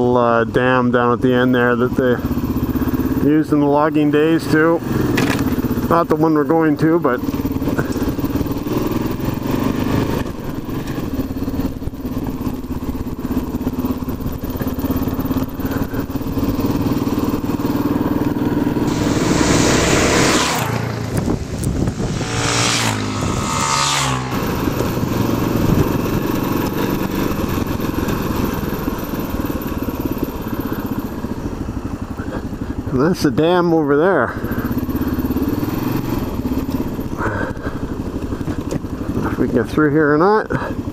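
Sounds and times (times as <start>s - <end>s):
motorcycle engine running: 0.0s - 40.9s
rushing noise: 18.4s - 27.0s.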